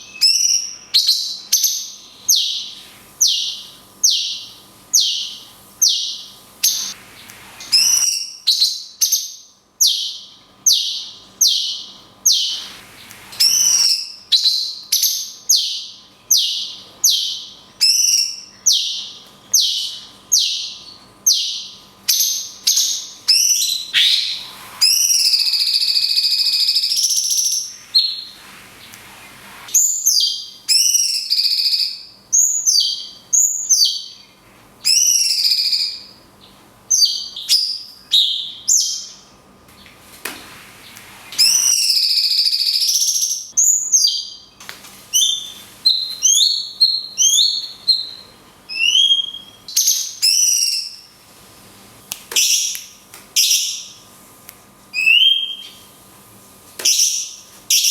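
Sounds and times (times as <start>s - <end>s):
songbird falling whistled calls: 23.3s - 28.4s.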